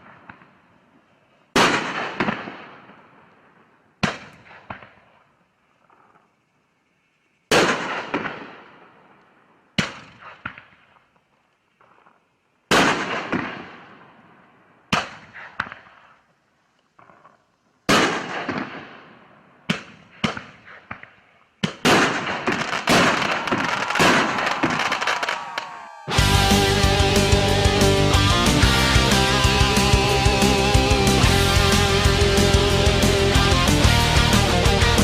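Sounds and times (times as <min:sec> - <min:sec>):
fireworks bangs: 0:01.5 - 0:05.2, 0:07.5 - 0:09.2, 0:11.8 - 0:16.2, 0:17.0 - 0:29.1.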